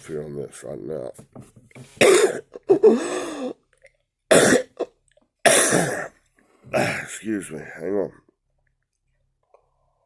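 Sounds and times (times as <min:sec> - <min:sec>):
man coughing: 0:02.0 - 0:03.1, 0:04.3 - 0:04.9, 0:05.5 - 0:06.1.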